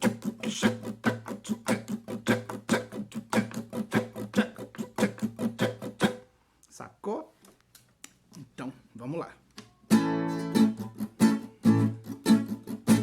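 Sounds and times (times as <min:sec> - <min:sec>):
acoustic guitar strumming: 0:00.0 - 0:06.2, 0:09.9 - 0:13.0.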